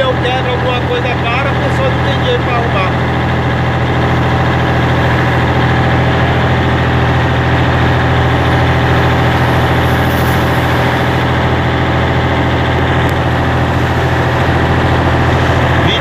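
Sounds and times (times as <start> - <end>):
truck diesel engine rumbling: 0.0 - 16.0.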